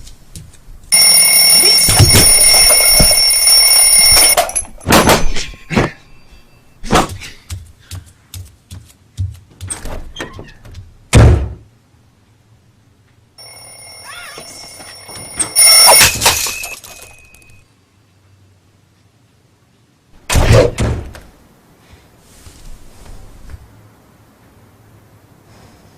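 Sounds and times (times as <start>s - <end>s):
alarm clock bell ringing: 0.9s - 5.2s, 13.4s - 17.6s
cartoon knocks and thuds: 9.2s - 11.7s
heavy thump: 11.1s - 11.6s.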